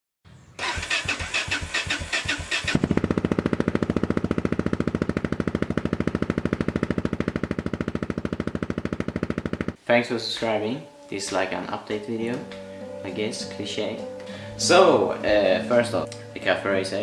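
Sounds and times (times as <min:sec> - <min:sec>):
electric starter cranking engine: 0:00.6 - 0:09.8
motorcycle engine idling: 0:01.6 - 0:09.8.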